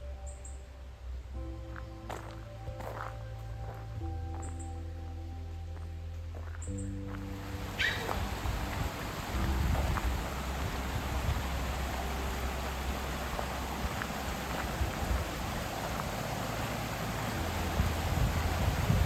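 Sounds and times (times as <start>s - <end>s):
creek rushing: 7.1s - 19.0s.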